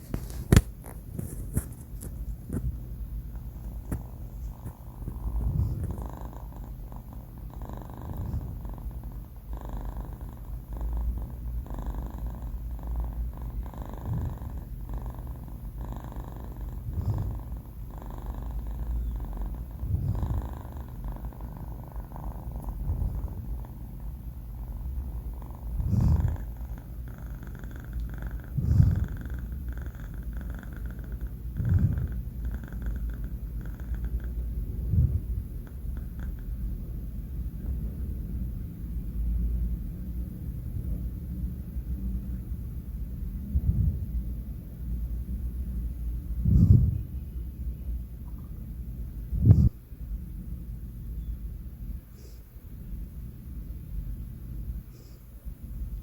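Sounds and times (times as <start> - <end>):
kitten snoring: 2.4 - 37.7, 43.4 - 44.3, 45.8 - 47.2, 49.3 - 49.8.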